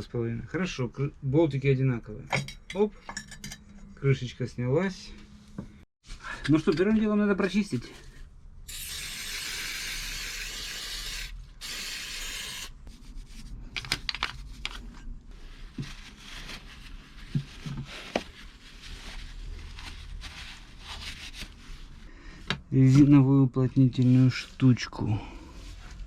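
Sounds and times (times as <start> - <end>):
cleaning spray hissing: 8.7 - 12.8
parts being wiped: 14.4 - 22.0.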